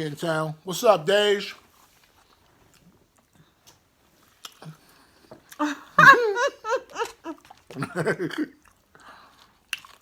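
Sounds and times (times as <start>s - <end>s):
people talking: 0.0s - 1.6s
people laughing: 5.6s - 8.4s.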